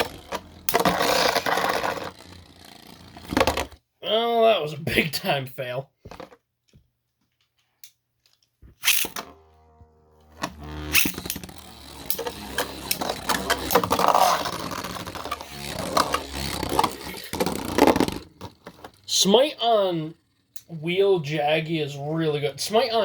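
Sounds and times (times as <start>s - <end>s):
spinning tops whirring: 0.0s - 3.8s, 8.7s - 23.0s
tops clicking and knocking: 0.0s - 3.8s, 8.6s - 21.9s
spinning top launch snap: 8.8s - 9.4s, 10.4s - 19.1s.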